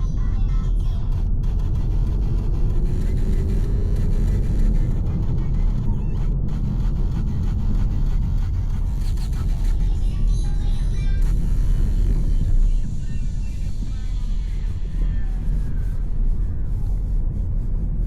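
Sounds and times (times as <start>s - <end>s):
car engine and road noise: 0.1s - 18.0s.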